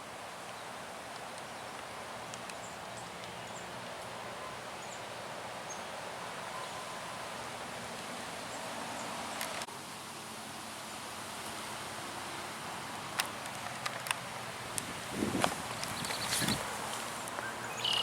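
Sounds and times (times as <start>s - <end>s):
steady outdoor hiss: 0.0s - 18.0s
faint high bird chirps: 15.8s - 16.6s, 17.4s - 18.0s.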